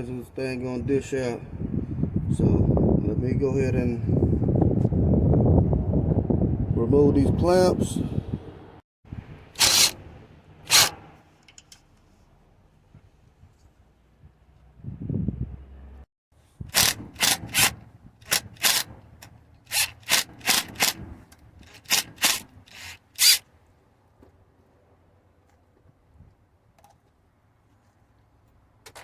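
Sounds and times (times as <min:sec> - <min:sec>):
hand tool scraping metal: 0:09.6 - 0:10.1, 0:10.7 - 0:11.7, 0:16.7 - 0:23.4.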